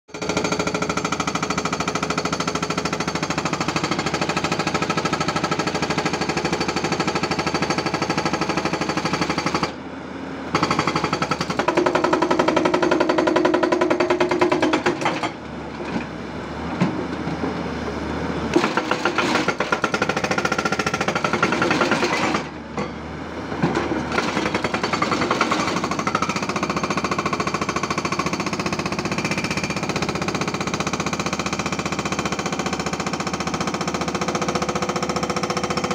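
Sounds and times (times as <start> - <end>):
hydraulic breaker hammering: 0.2 - 9.8, 10.5 - 15.4, 18.5 - 23.0, 23.6 - 35.9.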